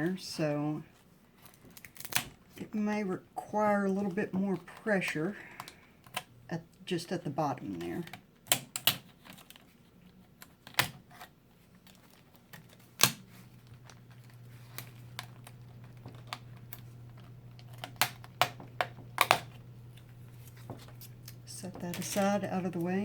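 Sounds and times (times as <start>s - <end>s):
faint low hum: 0.0s - 23.0s.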